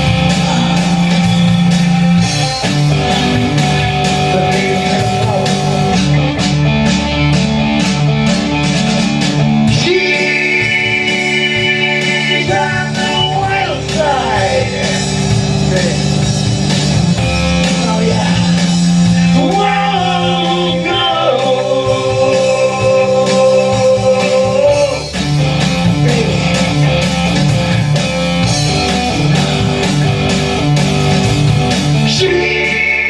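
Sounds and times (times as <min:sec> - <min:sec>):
instrumental metal rock music: 0:00.0 - 0:33.0.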